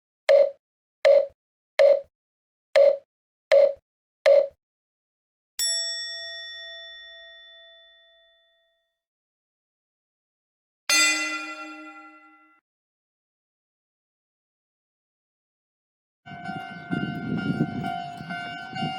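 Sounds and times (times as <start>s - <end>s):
bell-like ding: 5.6s - 8.8s, 10.9s - 12.6s.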